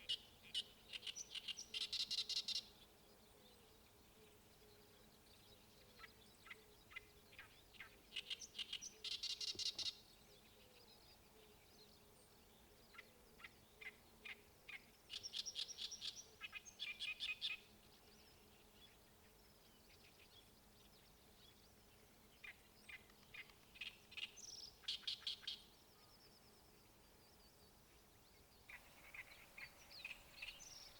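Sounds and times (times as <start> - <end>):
songbird chirping and chattering: 0.0 - 2.7, 6.0 - 10.1, 19.9 - 26.3, 28.2 - 30.9.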